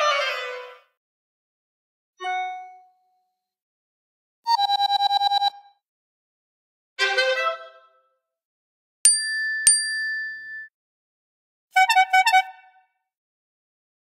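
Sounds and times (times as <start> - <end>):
bell-like dings: 9.1 - 10.7.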